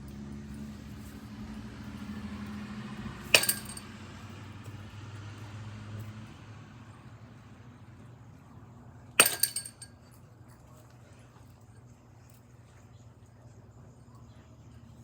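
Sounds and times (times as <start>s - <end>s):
baseball bat hitting ball: 3.2s - 4.0s, 9.2s - 9.9s.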